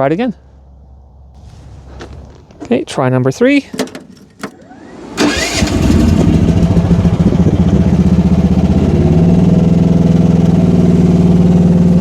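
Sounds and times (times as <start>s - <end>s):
excavator engine starting and running: 3.7s - 12.0s.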